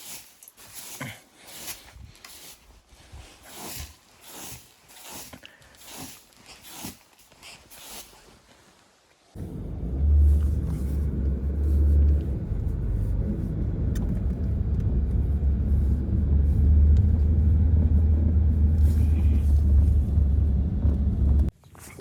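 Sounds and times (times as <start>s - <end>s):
blizzard wind buffeting microphone: 9.4s - 21.5s.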